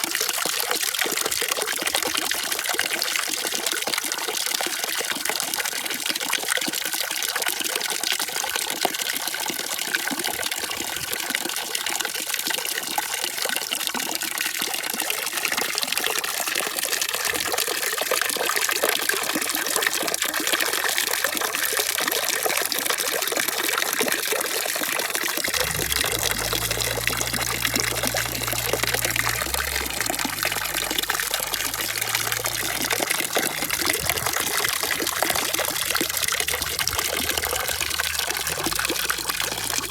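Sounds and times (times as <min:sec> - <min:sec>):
low rumble: 0:25.5 - 0:39.9
running water rushing: 0:25.5 - 0:39.9.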